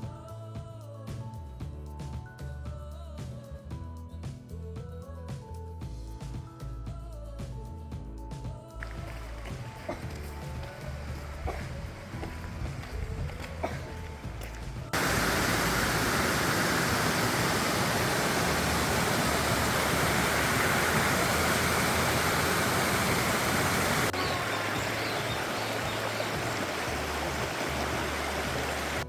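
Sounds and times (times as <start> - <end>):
stream rushing over rocks: 8.8 - 29.0.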